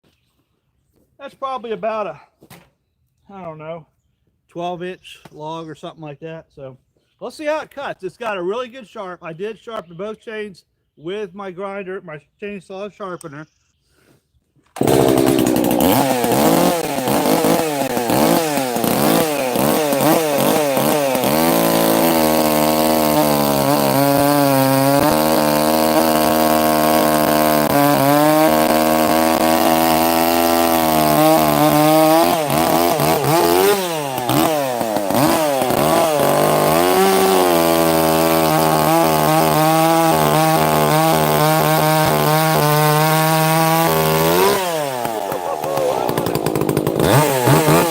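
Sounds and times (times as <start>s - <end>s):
chainsaw cutting log: 14.7s - 47.9s.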